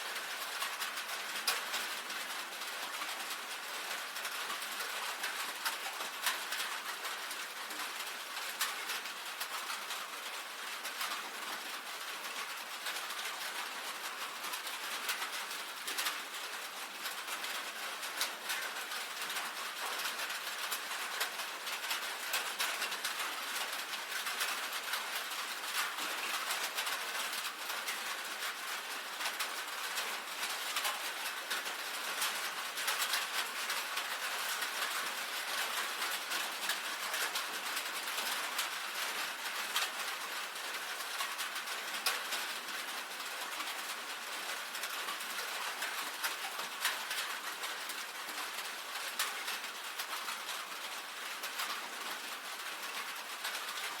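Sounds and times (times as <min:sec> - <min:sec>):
rain on a tin roof: 0:00.0 - 0:54.0.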